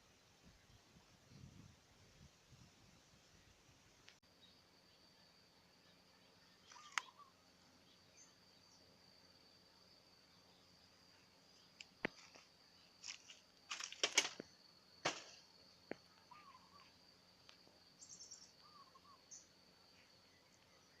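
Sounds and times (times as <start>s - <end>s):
insect drone: 0.0s - 21.0s
bird chirps: 5.8s - 8.9s, 16.1s - 17.0s, 18.0s - 21.0s.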